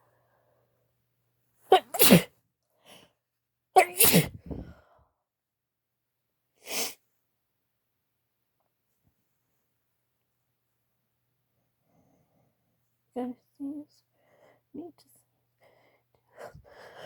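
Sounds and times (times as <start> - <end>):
woman sneezing: 1.7 - 2.3, 3.8 - 4.7.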